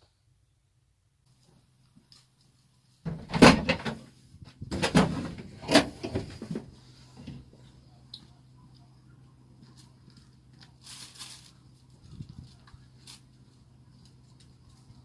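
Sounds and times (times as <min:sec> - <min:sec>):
faint steady hum: 0:00.0 - 0:15.0
loud clunks and knocks: 0:03.1 - 0:04.0, 0:04.7 - 0:06.7.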